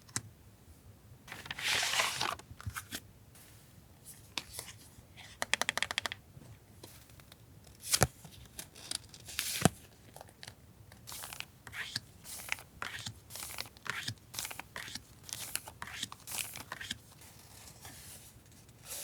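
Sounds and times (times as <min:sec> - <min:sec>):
paper rustling: 0:01.3 - 0:03.0, 0:11.1 - 0:19.0.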